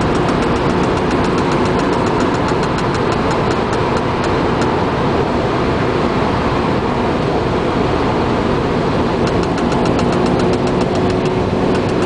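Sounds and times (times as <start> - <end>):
fast light ticking: 0.0 - 4.8, 9.2 - 12.0
car engine idling: 0.0 - 5.5, 8.6 - 12.0.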